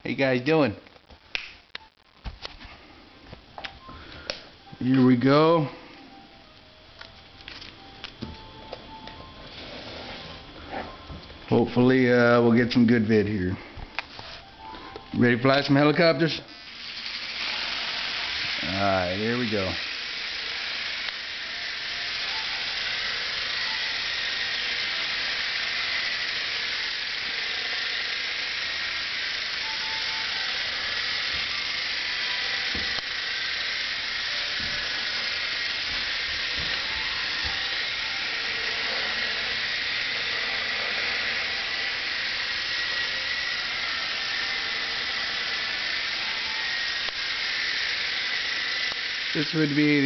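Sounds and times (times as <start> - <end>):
rc helicopter rotor whine: 7.4 - 50.0.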